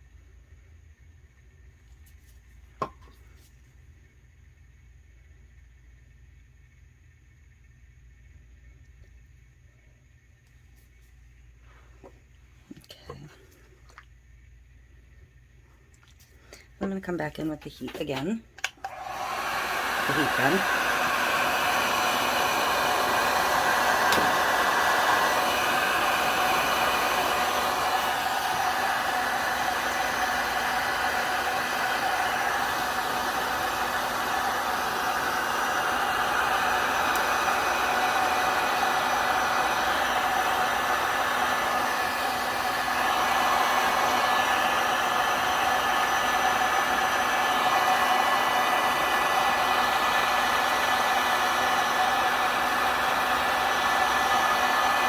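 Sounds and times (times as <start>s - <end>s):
heat gun blowing: 18.8s - 55.0s.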